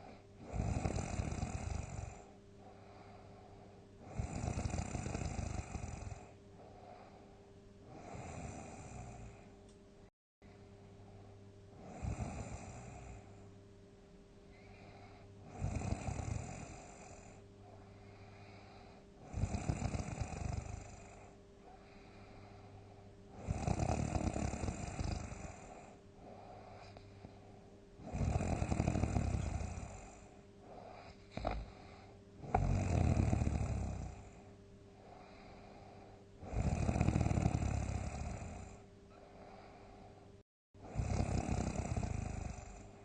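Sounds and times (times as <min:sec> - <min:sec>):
person snoring loudly: 0:00.0 - 0:02.4, 0:04.0 - 0:06.4, 0:07.9 - 0:09.4, 0:11.8 - 0:13.4, 0:15.4 - 0:17.4, 0:18.4 - 0:21.4, 0:23.3 - 0:26.0, 0:28.0 - 0:34.4, 0:36.4 - 0:38.8, 0:40.8 - 0:43.0.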